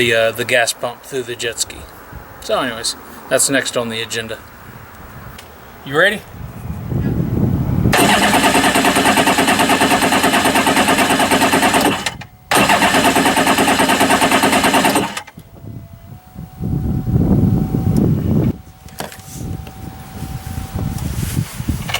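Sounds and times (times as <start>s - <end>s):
electric starter cranking engine: 7.9s - 15.5s.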